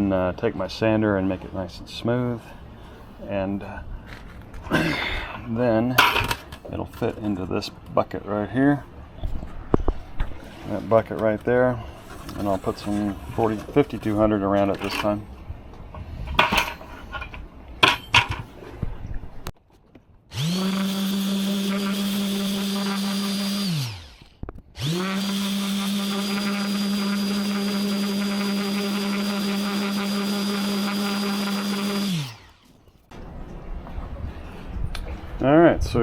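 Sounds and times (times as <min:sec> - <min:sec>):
electric sander motor running: 0:20.3 - 0:32.7.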